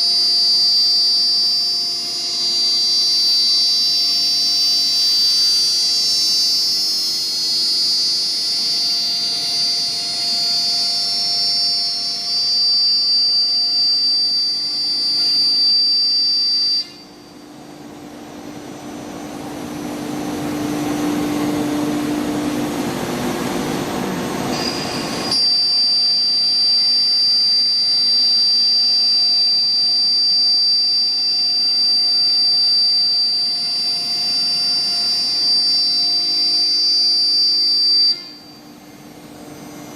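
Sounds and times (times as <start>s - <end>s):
router spindle whining: 0.0s - 16.8s.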